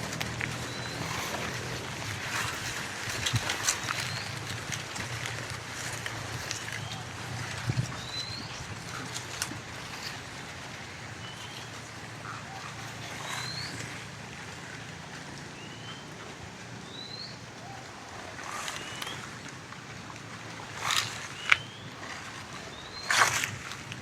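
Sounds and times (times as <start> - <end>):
footsteps on dry leaves: 0.0 - 14.1, 18.1 - 24.0
bird chirping: 0.4 - 2.6, 11.2 - 13.9, 18.5 - 19.4, 20.8 - 23.5.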